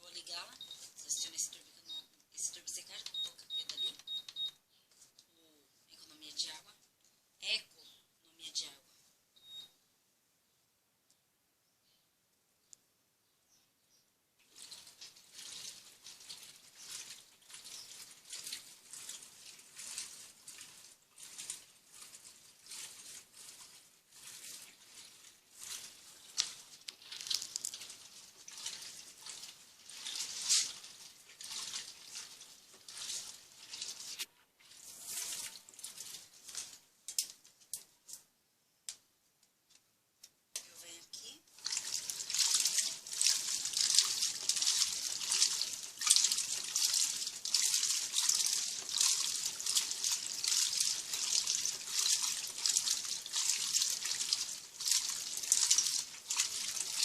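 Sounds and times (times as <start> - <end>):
water splashing in washing machine: 14.4 - 36.8, 41.5 - 57.0.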